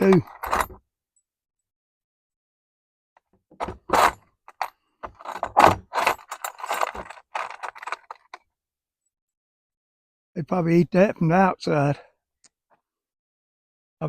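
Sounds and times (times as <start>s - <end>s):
metal parts rattling and scraping: 0.0s - 0.8s, 3.6s - 8.4s.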